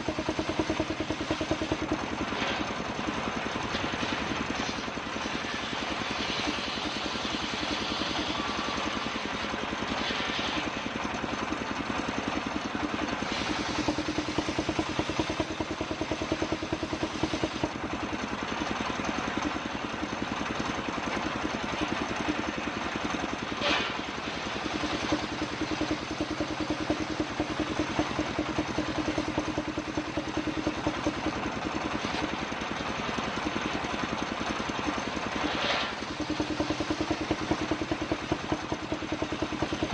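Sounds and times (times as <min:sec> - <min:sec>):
motor pulsing: 0:00.0 - 0:02.6, 0:03.6 - 0:10.8, 0:13.2 - 0:17.8, 0:23.6 - 0:31.2.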